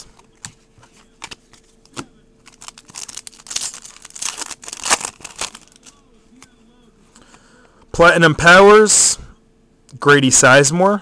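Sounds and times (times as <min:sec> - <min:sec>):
cards and wrapper rustling: 0:02.4 - 0:06.0.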